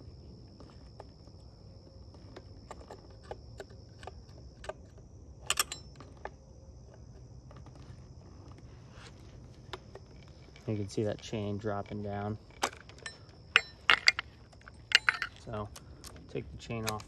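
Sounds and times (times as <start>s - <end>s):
metallic clicks of wrench on chainsaw: 5.4s - 6.0s, 10.2s - 17.0s.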